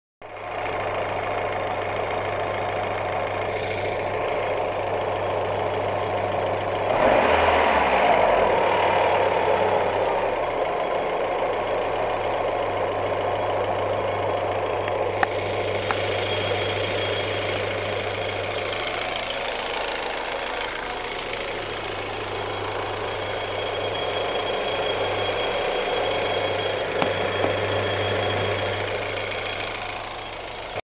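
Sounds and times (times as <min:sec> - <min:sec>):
car engine idling: 0:00.2 - 0:30.8
thin high whistle-like tone: 0:15.8 - 0:17.8, 0:21.9 - 0:30.6
compressor squeak: 0:23.1 - 0:30.6.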